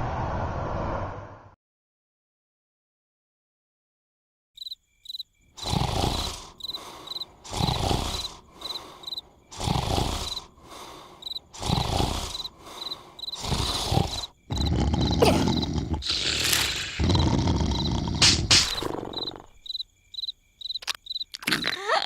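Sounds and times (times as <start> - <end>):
crickets chirping: 4.6 - 22.0
cartoon snoring: 5.6 - 19.6.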